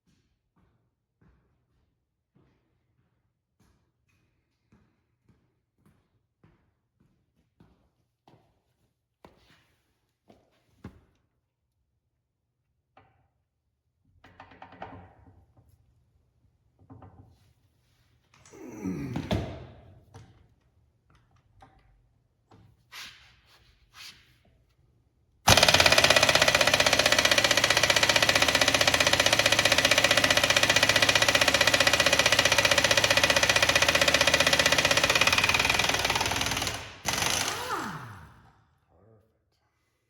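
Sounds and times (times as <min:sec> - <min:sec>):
impact wrench hammering: 0:25.5 - 0:38.4.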